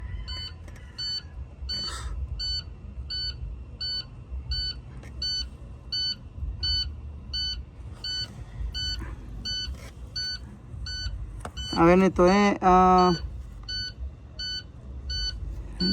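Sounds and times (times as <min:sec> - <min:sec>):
low uneven rumble: 0:00.0 - 0:15.9
electronic beeper beeps: 0:12.9 - 0:15.9.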